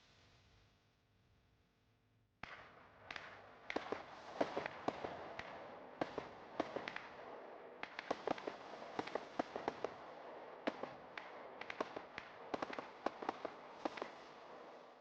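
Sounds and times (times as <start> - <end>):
firework crackling: 7.8 - 14.8.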